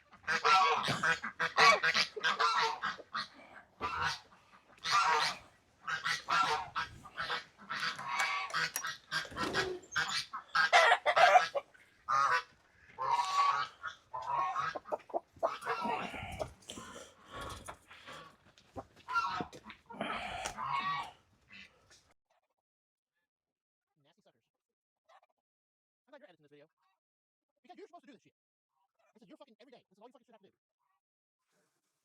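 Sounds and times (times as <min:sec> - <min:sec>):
poultry calling: 0:00.0 - 0:21.6.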